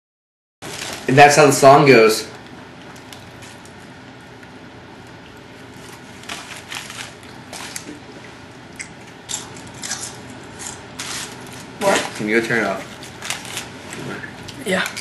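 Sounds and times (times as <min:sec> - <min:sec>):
person chewing sandwich crunching: 0:02.3 - 0:12.2, 0:12.8 - 0:14.6.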